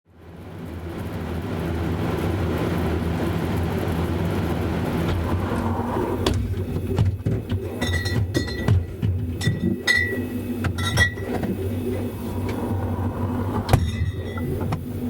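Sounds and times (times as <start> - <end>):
fridge cooling unit humming: 0.1 - 15.0.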